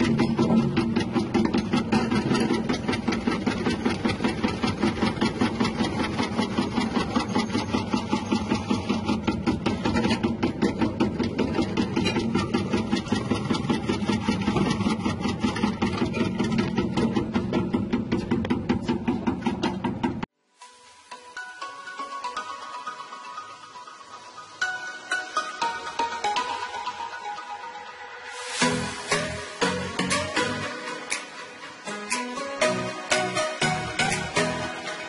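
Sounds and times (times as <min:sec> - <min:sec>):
motor hum: 0:00.0 - 0:20.2.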